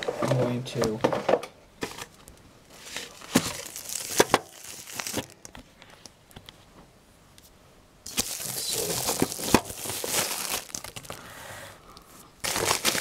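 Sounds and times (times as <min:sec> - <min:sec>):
packaging crinkling and rustling: 0:01.8 - 0:05.7, 0:08.1 - 0:11.3, 0:12.4 - 0:13.0.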